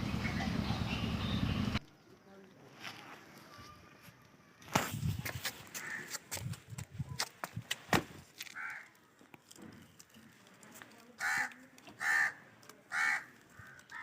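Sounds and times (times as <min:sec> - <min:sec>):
crow cawing: 0:05.8 - 0:06.2, 0:08.5 - 0:09.0, 0:11.2 - 0:14.0.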